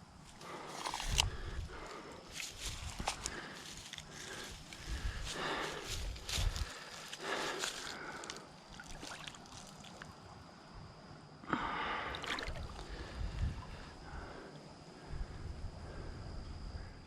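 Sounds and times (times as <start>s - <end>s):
water splashing and sloshing: 7.2s - 10.5s, 12.0s - 13.8s.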